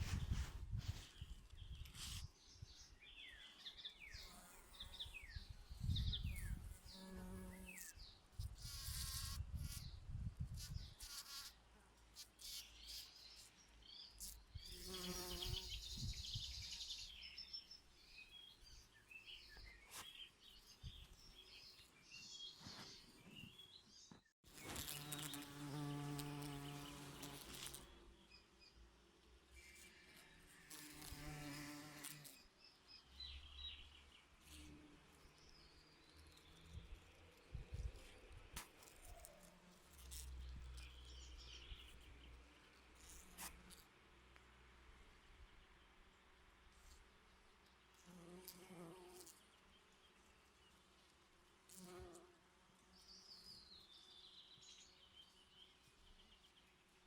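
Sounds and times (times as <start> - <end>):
small birds chirping: 0.0 - 11.5, 12.4 - 28.8.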